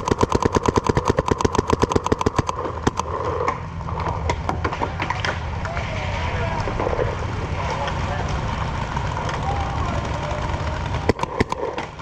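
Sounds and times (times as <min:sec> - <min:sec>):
paintball marker firing shots: 0:00.0 - 0:03.6, 0:11.1 - 0:11.9.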